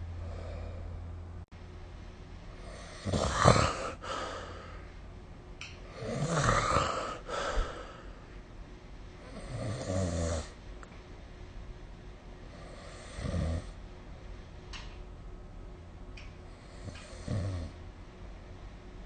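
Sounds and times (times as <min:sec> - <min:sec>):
person snoring: 0:02.6 - 0:04.8, 0:05.9 - 0:08.2, 0:09.3 - 0:10.6, 0:12.6 - 0:13.8, 0:16.6 - 0:17.8.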